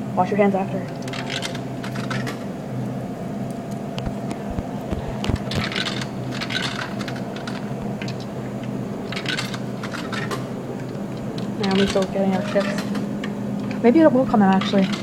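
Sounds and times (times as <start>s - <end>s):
steady low hum: 2.6s - 9.1s.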